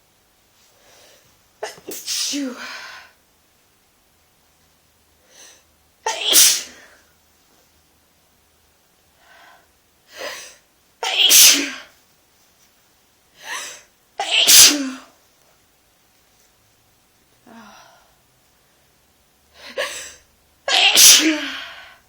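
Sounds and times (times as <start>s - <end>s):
person sneezing: 1.6s - 3.1s, 6.1s - 7.0s, 10.2s - 11.9s, 13.4s - 15.1s, 19.6s - 22.0s.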